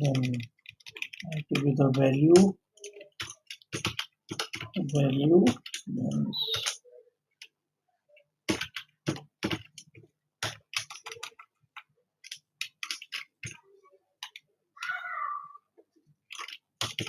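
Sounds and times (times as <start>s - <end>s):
computer keyboard typing: 0.0s - 6.8s, 8.4s - 13.6s, 14.2s - 15.0s, 16.3s - 17.0s.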